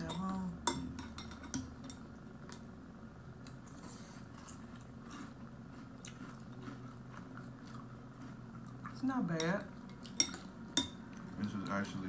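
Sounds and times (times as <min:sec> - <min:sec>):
chewing crunchy cereal: 0:03.6 - 0:09.0.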